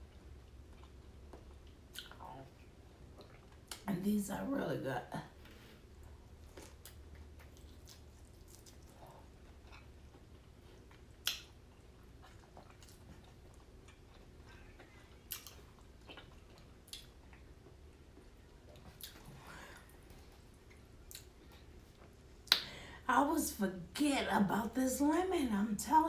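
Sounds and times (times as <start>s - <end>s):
person chewing food: 0.0s - 3.8s, 5.9s - 22.7s.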